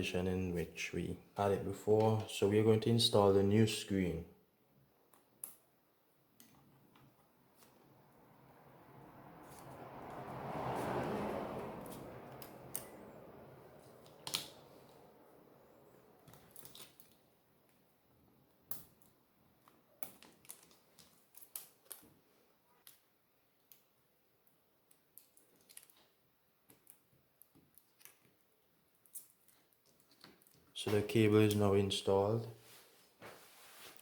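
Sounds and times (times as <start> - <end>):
soft rushing noise: 7.8 - 14.0.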